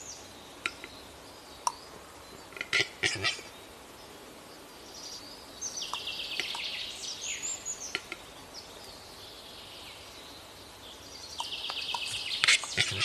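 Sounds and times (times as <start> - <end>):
birds trilling and chirping: 0.0 - 13.0.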